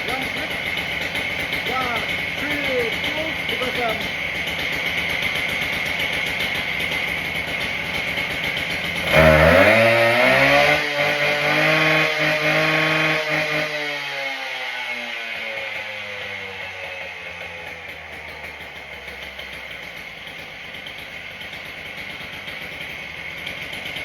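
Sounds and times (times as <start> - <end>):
concrete saw engine idling and revving: 0.0 - 24.0.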